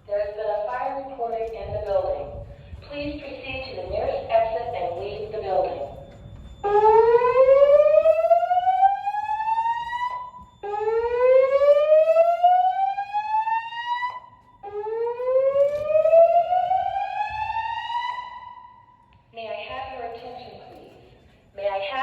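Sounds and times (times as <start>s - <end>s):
fire alarm whoop tone: 5.2s - 19.0s.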